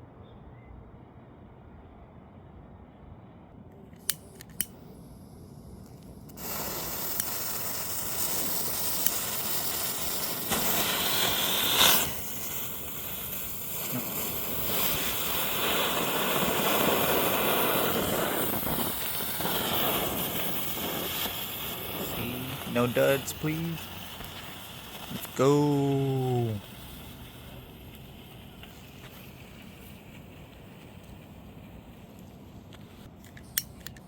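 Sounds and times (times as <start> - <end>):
firework hissing: 4.1 - 33.1.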